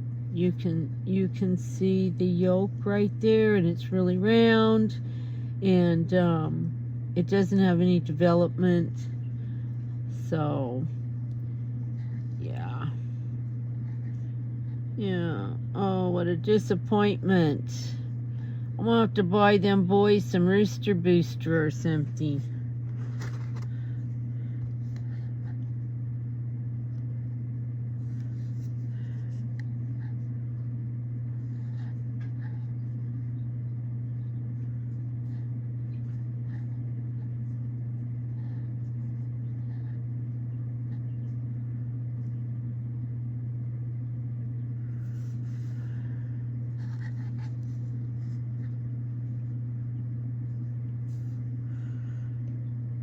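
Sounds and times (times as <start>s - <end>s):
electrical appliance hum: 0.0s - 53.0s.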